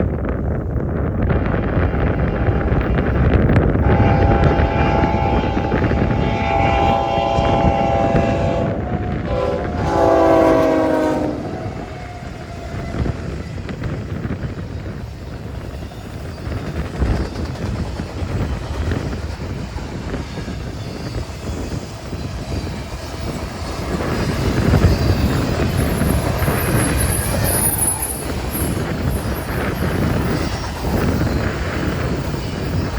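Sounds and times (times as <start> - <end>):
freight train running past: 0.0 - 32.9
locomotive air horn chord: 3.8 - 12.5.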